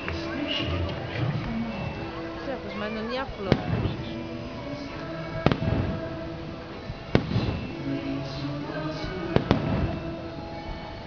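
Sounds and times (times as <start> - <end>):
fireworks exploding: 0.0 - 10.9
music playing: 0.0 - 11.0.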